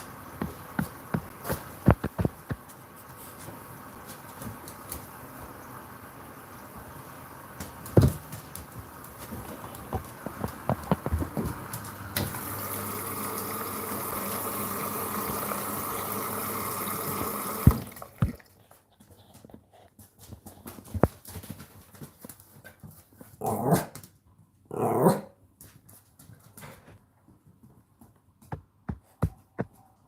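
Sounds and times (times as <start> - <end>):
washing machine running: 3.6 - 18.5.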